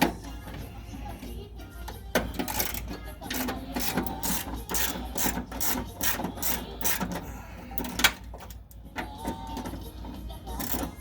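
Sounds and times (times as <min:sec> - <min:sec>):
hand ratchet clicking: 0:02.3 - 0:07.2, 0:10.5 - 0:11.0.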